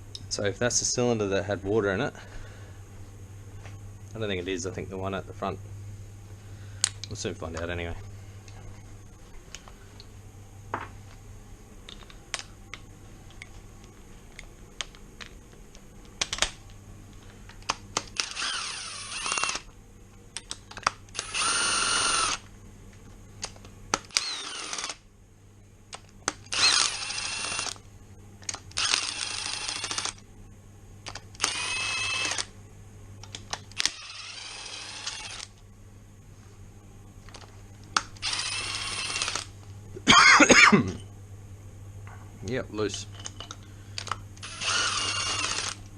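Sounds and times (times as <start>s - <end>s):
cordless power tool bursts: 18.2s - 19.7s, 21.1s - 22.4s, 24.1s - 25.0s, 26.5s - 27.8s, 28.8s - 30.2s, 31.4s - 32.5s, 33.8s - 35.5s, 38.2s - 39.5s, 44.4s - 45.8s.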